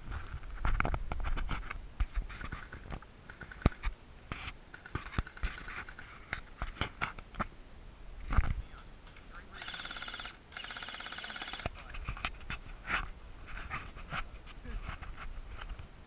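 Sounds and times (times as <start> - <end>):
irregular clicks: 2.4 - 4.0
rustling: 11.6 - 16.0.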